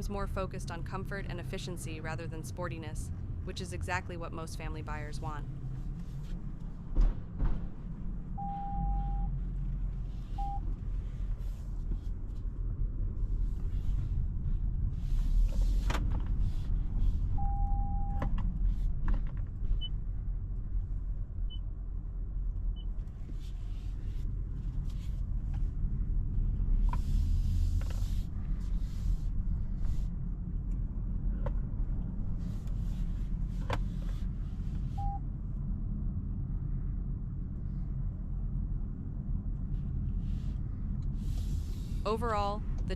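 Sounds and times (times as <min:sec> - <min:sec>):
car road rumble: 0:00.0 - 0:42.9
short electronic beeps: 0:08.4 - 0:09.3, 0:10.4 - 0:10.6, 0:17.4 - 0:18.2, 0:35.0 - 0:35.2
tyre and road hiss: 0:26.8 - 0:30.2.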